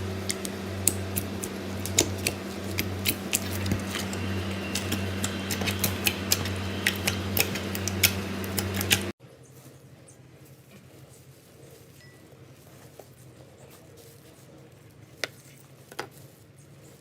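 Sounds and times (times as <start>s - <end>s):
steady low hum: 0.0s - 9.2s
slime clicking and crackling: 0.2s - 9.1s.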